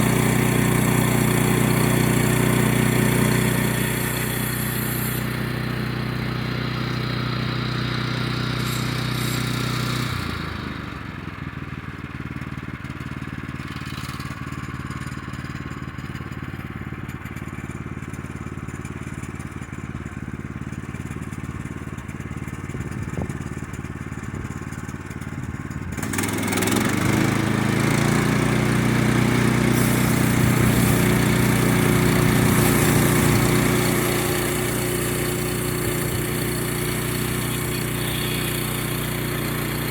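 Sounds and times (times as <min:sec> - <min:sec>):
small gasoline engine running: 0:00.0 - 0:39.9.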